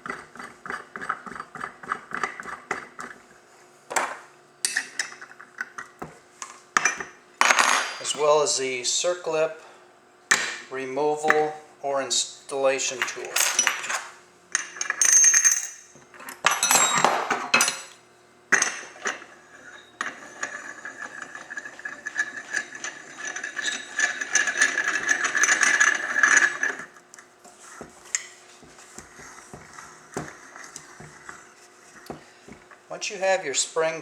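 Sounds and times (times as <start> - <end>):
metal tools clattering: 6.8 - 8.4, 13.0 - 14.1, 14.7 - 27.0.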